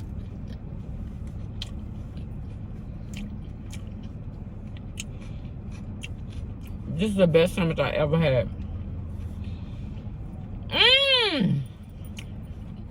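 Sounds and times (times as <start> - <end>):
person chewing food: 0.0 - 6.9, 8.5 - 10.5, 11.8 - 12.9
steady low hum: 0.0 - 12.9.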